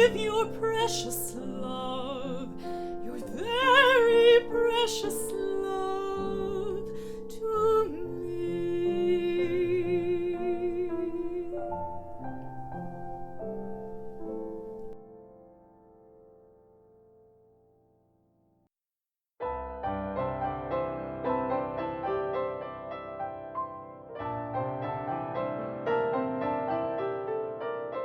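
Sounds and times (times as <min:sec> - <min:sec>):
woman singing with vibrato: 0:00.0 - 0:11.7
piano accompaniment: 0:00.0 - 0:18.6, 0:19.4 - 0:28.0.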